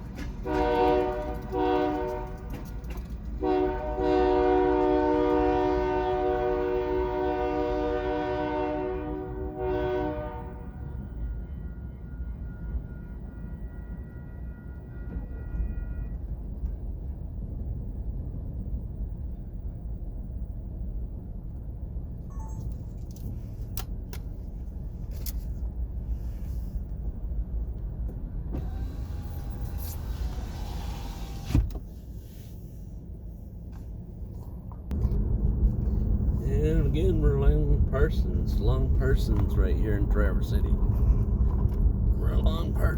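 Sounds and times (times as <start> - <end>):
low engine rumble: 0.0 - 42.9
diesel locomotive horn: 0.2 - 16.6, 28.5 - 31.4.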